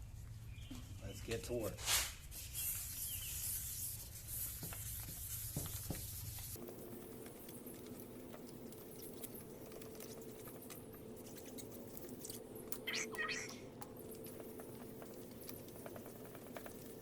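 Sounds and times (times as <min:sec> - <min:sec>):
sandpaper rubbing on plastic: 0:01.8 - 0:06.6.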